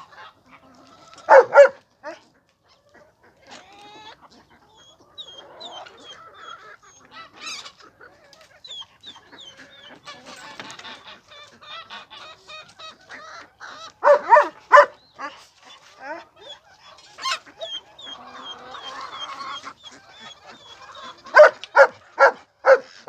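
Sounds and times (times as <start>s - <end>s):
loud poultry calls: 0.0s - 2.2s, 2.9s - 23.0s
poultry peeping: 2.7s - 23.0s.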